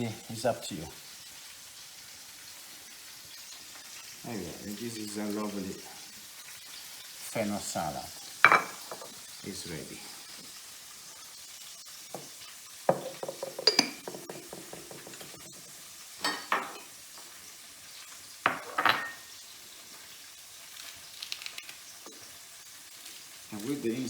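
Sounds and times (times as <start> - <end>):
food sizzling in frying pan: 0.0 - 24.0
utensils and dishes clinking: 8.4 - 9.2, 12.9 - 15.6, 16.2 - 16.9, 18.5 - 19.3.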